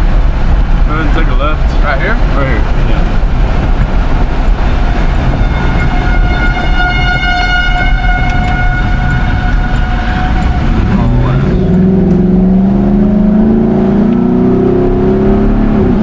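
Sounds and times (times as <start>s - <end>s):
car engine accelerating: 0.0s - 16.0s
vehicle road rumble: 0.0s - 16.0s
high-pitched tone: 4.6s - 12.5s.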